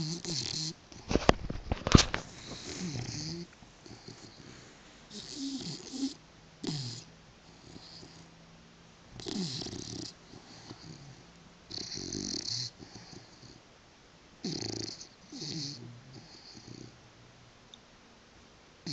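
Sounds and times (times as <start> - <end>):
dog snoring: 0.0 - 1.2, 2.2 - 8.3, 9.1 - 13.6, 14.4 - 17.0
dog snuffling breaths: 0.0 - 8.3, 9.2 - 13.6.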